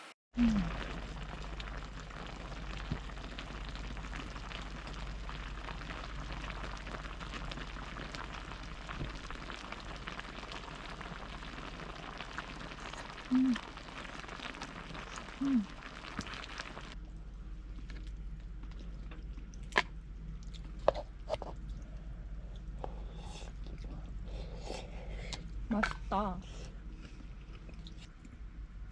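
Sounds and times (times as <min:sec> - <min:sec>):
low vocal hum: 0:00.4 - 0:04.7, 0:09.2 - 0:16.9, 0:21.6 - 0:27.4
rain pattering: 0:00.4 - 0:17.0.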